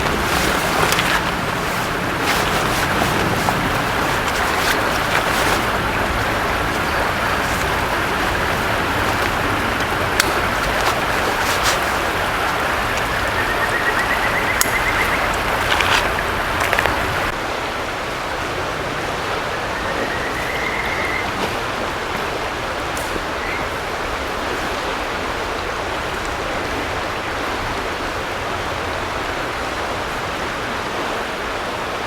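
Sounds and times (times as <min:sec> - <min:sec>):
river water rushing: 0:00.0 - 0:32.0
faint whistle: 0:19.6 - 0:21.4.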